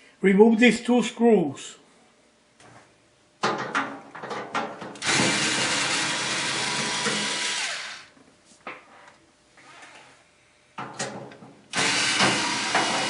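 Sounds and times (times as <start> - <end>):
cordless drill motor running: 5.0 - 8.1, 11.7 - 13.0.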